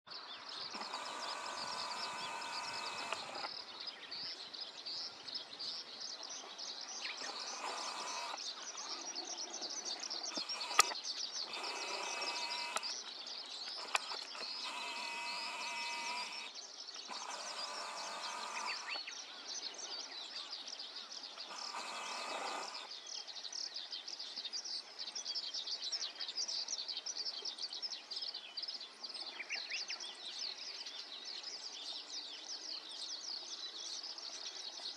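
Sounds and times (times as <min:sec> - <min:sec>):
bird calls: 0:00.1 - 0:34.9
insects chirring: 0:00.5 - 0:03.6, 0:07.0 - 0:09.1, 0:10.2 - 0:19.1, 0:21.3 - 0:22.9
sharp clicks: 0:00.7 - 0:03.5, 0:07.2 - 0:08.4, 0:10.3 - 0:13.0, 0:13.6 - 0:19.0, 0:21.4 - 0:22.9.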